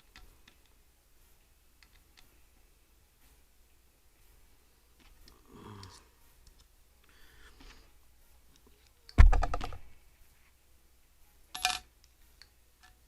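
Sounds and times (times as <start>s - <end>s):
loud knock with clattering clicks: 9.2s - 9.8s.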